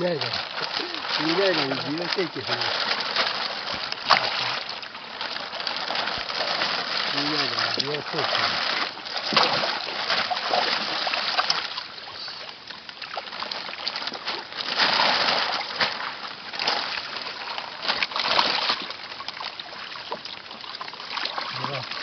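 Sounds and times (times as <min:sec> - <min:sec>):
fish splashing water: 0:00.0 - 0:22.0.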